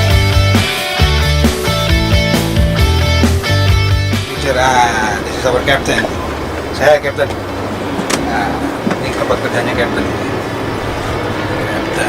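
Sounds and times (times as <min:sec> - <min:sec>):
rock music: 0:00.0 - 0:08.0
driving bass line: 0:00.0 - 0:08.4.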